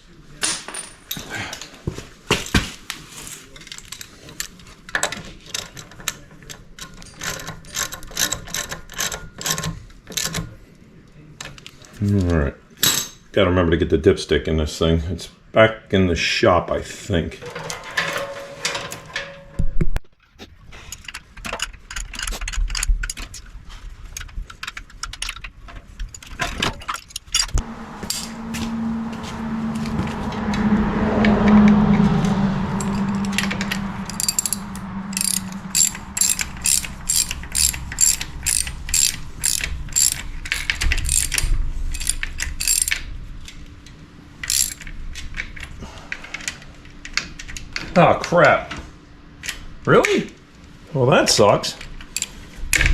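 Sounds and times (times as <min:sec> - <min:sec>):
steady low hum: 0:27.3 - 0:47.4
socket ratchet clicking: 0:34.1 - 0:43.0, 0:44.4 - 0:44.9.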